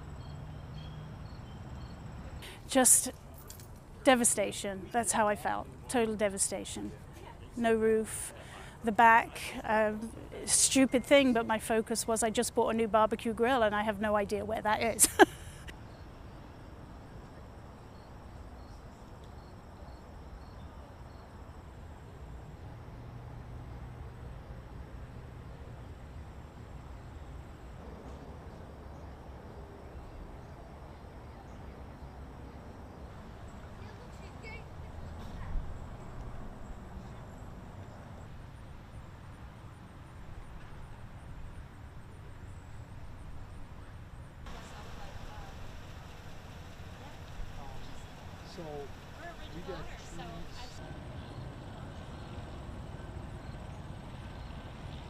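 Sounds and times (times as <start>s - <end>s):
insects chirping: 0.0s - 3.0s, 15.1s - 23.1s, 24.3s - 54.9s
faint hiss: 44.5s - 50.8s.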